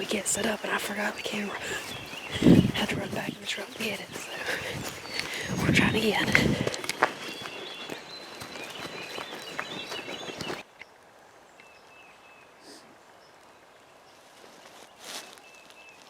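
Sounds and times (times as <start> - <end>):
footsteps: 0.0 - 10.7
songbirds singing: 0.0 - 16.0.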